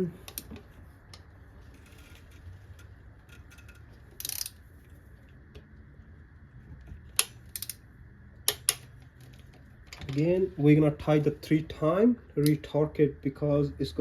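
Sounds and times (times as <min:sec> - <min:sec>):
wrench clicking: 0:03.3 - 0:04.6, 0:07.2 - 0:07.8.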